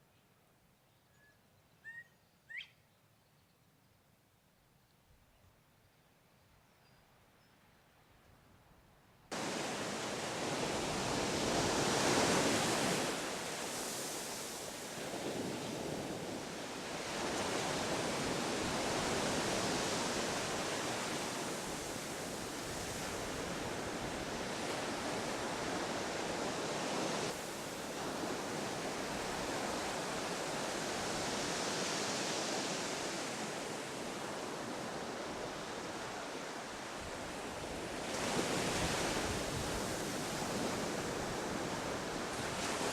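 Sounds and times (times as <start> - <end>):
ocean surf breaking on shore: 9.3 - 42.9.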